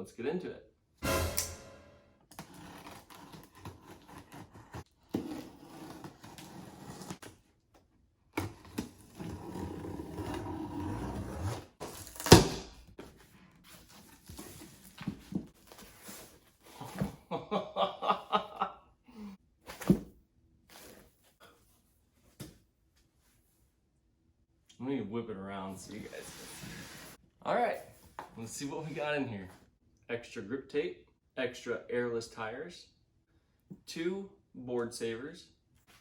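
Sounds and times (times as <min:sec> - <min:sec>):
sharp click: 0:01.0 - 0:01.9
packaging rustling and scraping: 0:13.0 - 0:16.9.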